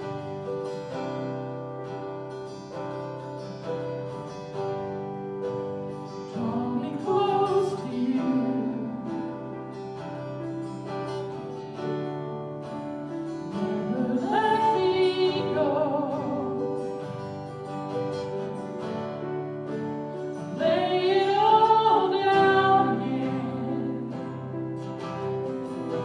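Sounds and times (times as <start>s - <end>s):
acoustic guitar strumming: 0.0s - 26.0s
woman singing: 6.2s - 10.0s, 13.5s - 17.1s, 20.4s - 26.0s.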